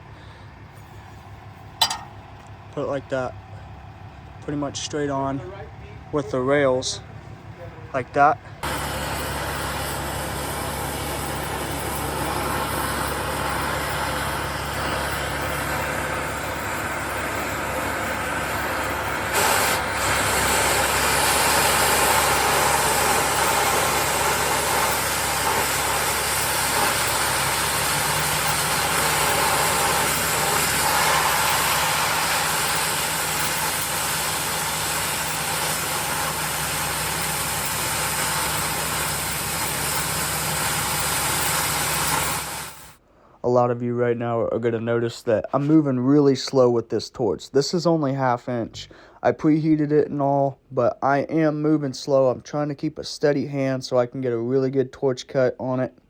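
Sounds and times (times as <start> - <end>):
engine idling: 0.0 - 43.0
cutting torch hissing: 8.6 - 43.0.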